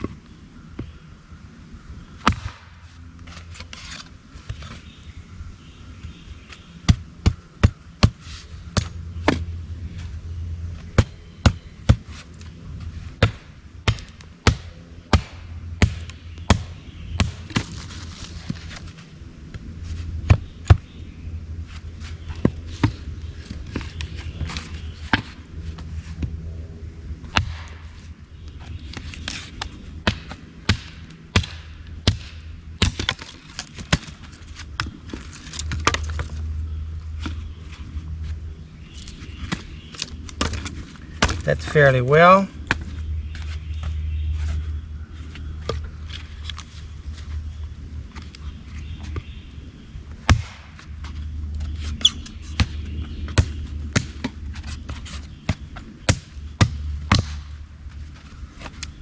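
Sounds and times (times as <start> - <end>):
steady low hum: 0.0 - 59.0
axe striking wood: 2.2 - 2.7, 27.3 - 27.9, 30.0 - 33.3, 50.3 - 50.8, 56.1 - 57.4.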